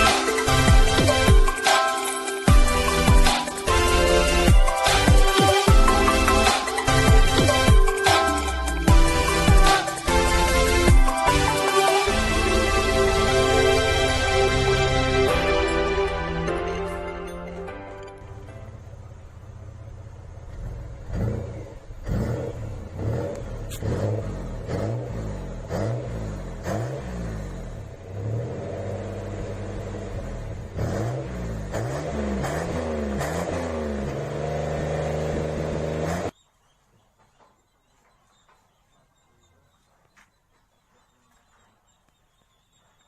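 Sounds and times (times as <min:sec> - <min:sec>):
engine throttle blips: 0:17.8 - 0:36.4.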